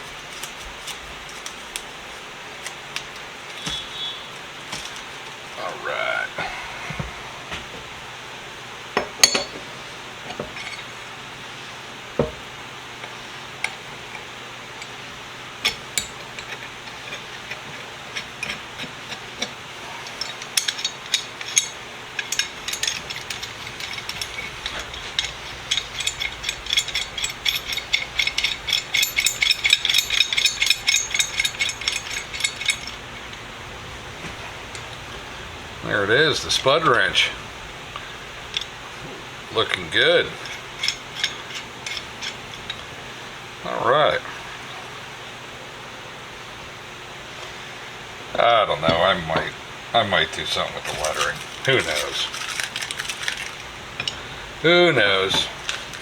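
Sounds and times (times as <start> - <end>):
metal wrench clicks and clinks: 15.6 - 33.0, 40.4 - 42.8, 50.9 - 54.2.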